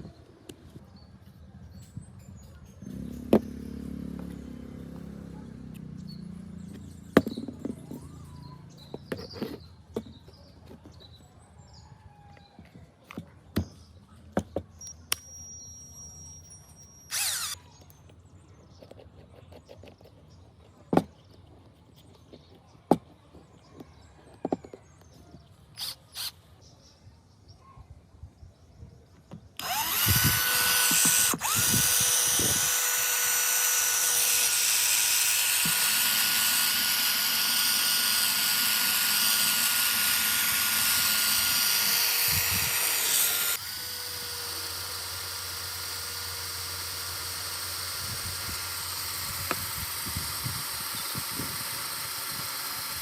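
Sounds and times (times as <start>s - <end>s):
cordless drill motor whine: 15.1s - 17.6s, 25.8s - 26.4s, 29.6s - 53.0s.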